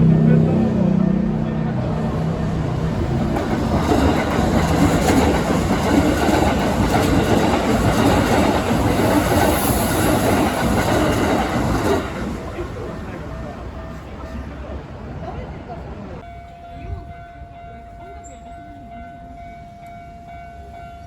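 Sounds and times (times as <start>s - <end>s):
train wheels clacking over rail joints: 3.0s - 13.2s.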